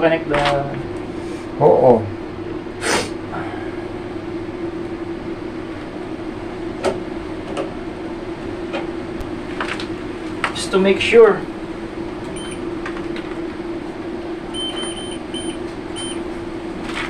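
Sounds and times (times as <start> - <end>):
electrical hum: 0.0 - 17.0
short hiss: 2.8 - 3.2.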